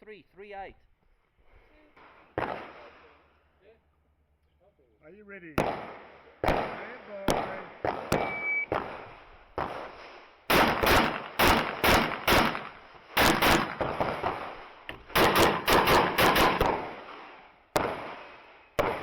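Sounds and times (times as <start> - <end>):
handgun shots: 7.3 - 8.9, 10.5 - 17.0.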